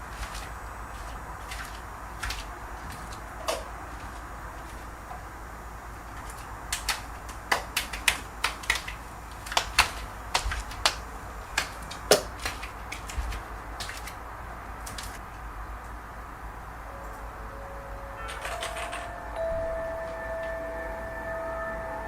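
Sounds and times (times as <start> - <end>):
computer keyboard keys clacking: 18.3 - 19.3.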